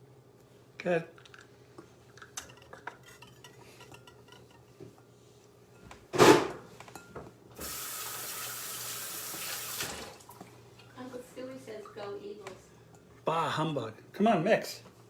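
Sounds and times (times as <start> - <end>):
kitchen faucet running: 7.6 - 10.3.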